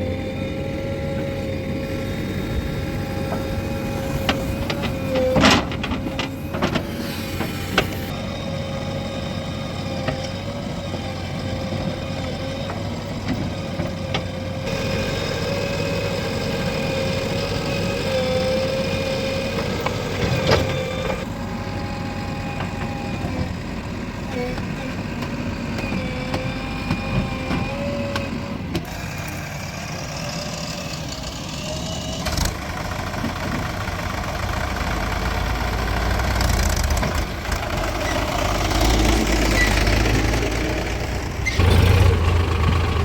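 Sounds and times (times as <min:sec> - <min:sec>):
diesel engine running: 0:00.0 - 0:43.0
high whine: 0:02.0 - 0:08.8.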